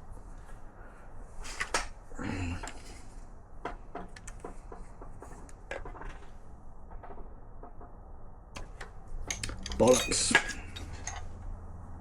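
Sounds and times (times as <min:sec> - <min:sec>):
hand tools clicking on metal: 0:08.6 - 0:11.3.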